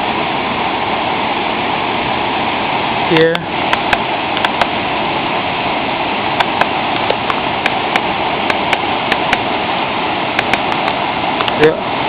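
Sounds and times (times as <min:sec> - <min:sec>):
waterfall rushing: 0:00.0 - 0:12.0
sharp clicks: 0:03.7 - 0:04.7, 0:06.4 - 0:09.5, 0:10.4 - 0:11.6.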